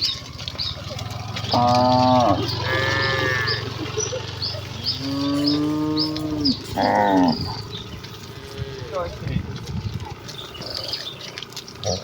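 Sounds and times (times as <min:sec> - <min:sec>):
cattle mooing: 0:00.8 - 0:09.2.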